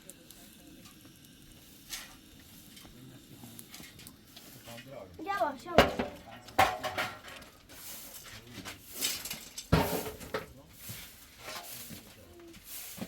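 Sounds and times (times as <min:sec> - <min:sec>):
hard objects knocking and clattering: 0:05.7 - 0:07.6, 0:09.3 - 0:10.6.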